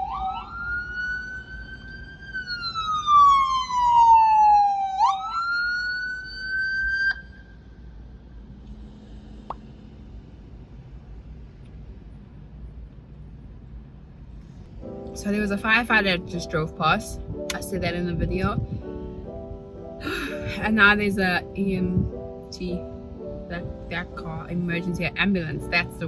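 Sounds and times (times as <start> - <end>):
fire engine siren wailing: 0.0 - 7.8.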